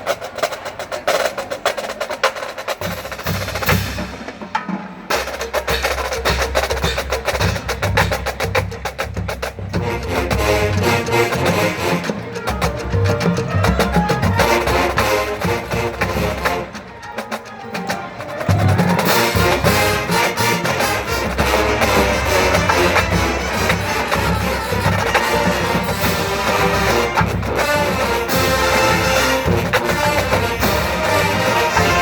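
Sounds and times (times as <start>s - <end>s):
drum line: 0.0s - 32.0s
marching band brass: 0.0s - 32.0s.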